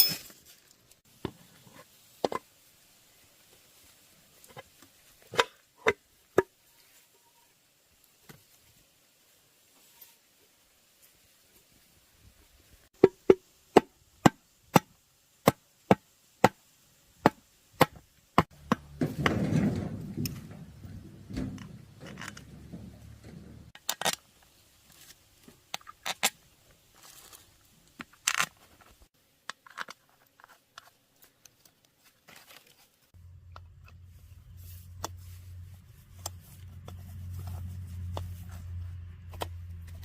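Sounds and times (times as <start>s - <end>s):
scraping or rubbing: 18.5s - 23.8s, 33.9s - 40.0s.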